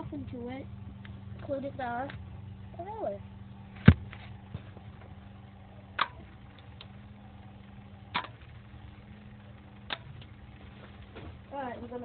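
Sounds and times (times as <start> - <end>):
small motor humming: 0.0 - 12.0
sharp clicks: 5.9 - 7.0, 8.1 - 8.5.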